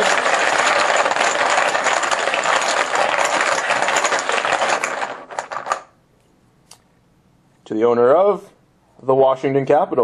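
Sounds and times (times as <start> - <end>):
poker chips rattling: 0.0 - 5.9.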